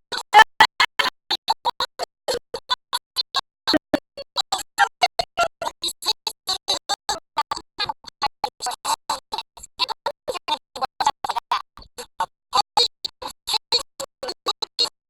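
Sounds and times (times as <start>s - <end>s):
chopped stuttering audio bursts: 0.4s - 1.0s, 3.7s - 4.1s.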